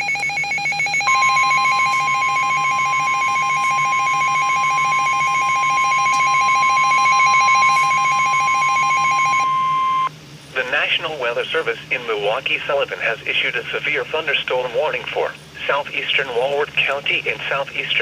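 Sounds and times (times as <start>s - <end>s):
loud steady single tone: 0.0s - 10.1s
pulsing ringing alarm tone: 0.0s - 10.1s.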